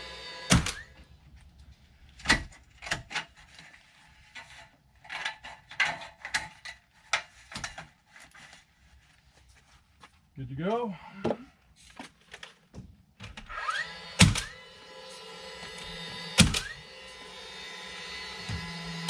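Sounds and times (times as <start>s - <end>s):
knocks and clunks from roof work: 18.4s - 19.0s.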